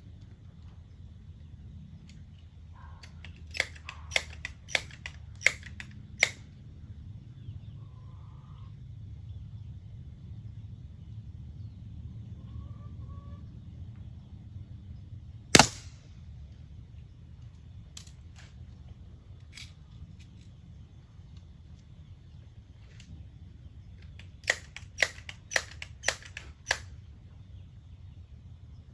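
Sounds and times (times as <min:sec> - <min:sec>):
pellet pistol firing crack: 0:03.0 - 0:06.4, 0:15.5 - 0:16.2, 0:24.2 - 0:27.0
pellet pistol pumping clicks: 0:03.0 - 0:06.5, 0:15.5 - 0:16.0, 0:24.0 - 0:27.0.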